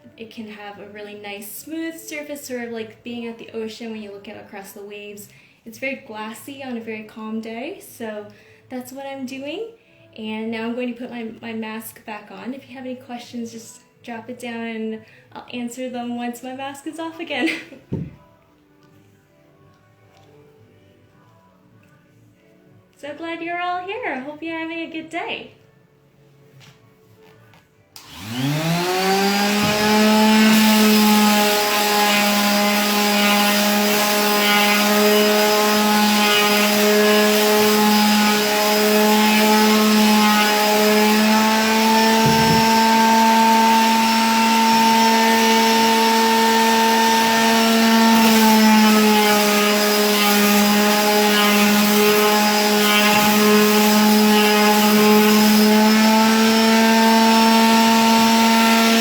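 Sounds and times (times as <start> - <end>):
electric sander whining: 28.0 - 59.0.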